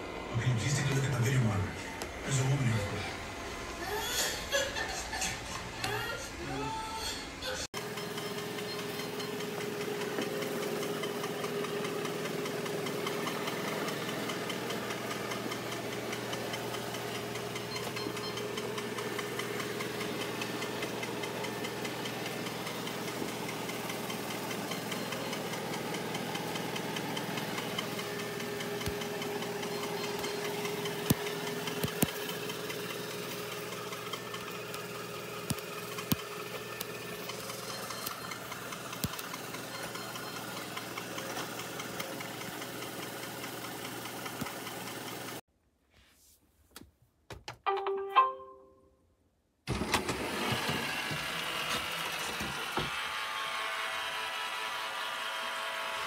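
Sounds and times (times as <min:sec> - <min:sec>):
robot vacuum motor hum: 0:07.8 - 0:45.4, 0:49.7 - 0:56.0.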